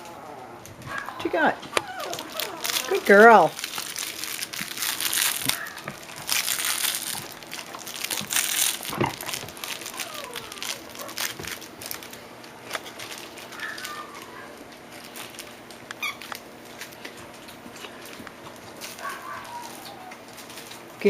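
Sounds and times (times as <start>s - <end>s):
puppy whining: 0.0s - 3.9s, 4.6s - 12.2s, 12.9s - 14.9s, 16.0s - 16.4s, 18.7s - 20.8s
toys crinkling and rustling: 0.0s - 21.0s.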